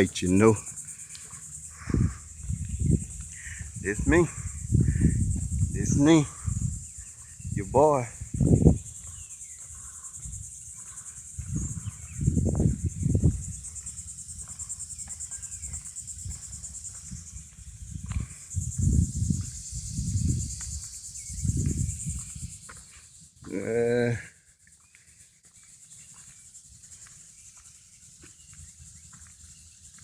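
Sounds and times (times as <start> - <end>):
insect chorus: 0.0 - 30.0
low rumbles on microphone: 1.8 - 9.0, 11.4 - 13.8, 17.2 - 20.6.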